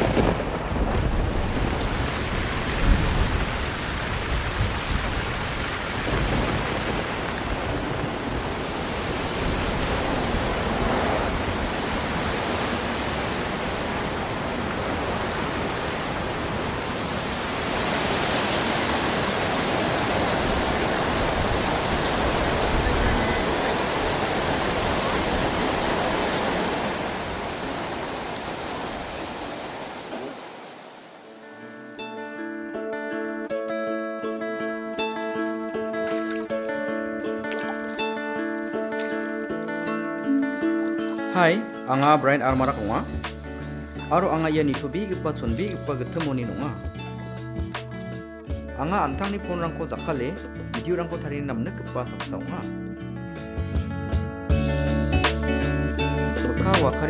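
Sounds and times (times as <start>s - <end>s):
roaring water noise: 0.0s - 31.5s.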